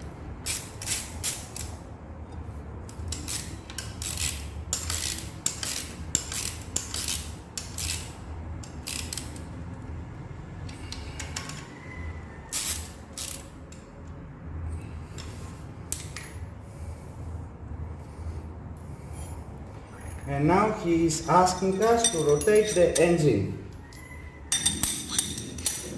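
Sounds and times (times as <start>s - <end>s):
ratchet clicking: 2.9s - 9.5s
hand tools clicking on metal: 20.2s - 23.4s, 24.5s - 25.9s.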